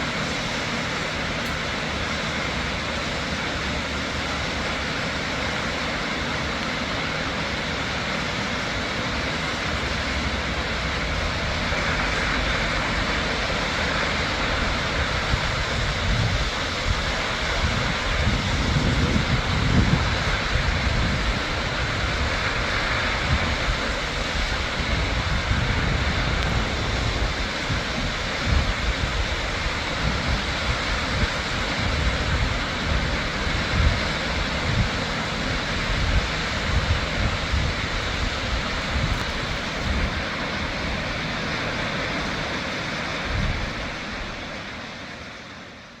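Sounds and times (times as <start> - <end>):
waterfall roaring: 0.0 - 46.0
wind buffeting microphone: 10.7 - 44.5.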